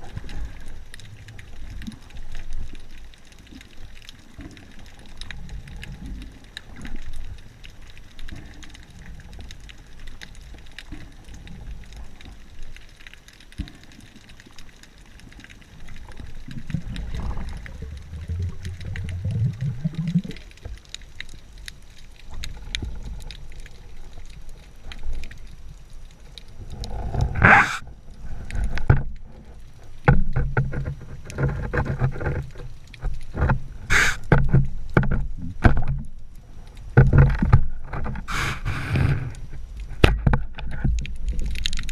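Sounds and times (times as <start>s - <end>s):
muffled underwater rumble: 15.3s - 41.9s
loud rush of water noise: 33.9s - 34.2s, 38.3s - 39.0s.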